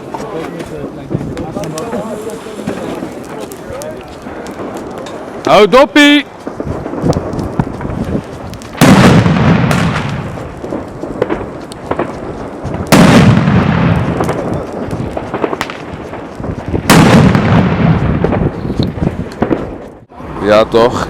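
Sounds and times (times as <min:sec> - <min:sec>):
firework explosions with echoing rumble: 0:00.0 - 0:20.7
small cracks: 0:01.4 - 0:05.5, 0:06.4 - 0:08.8.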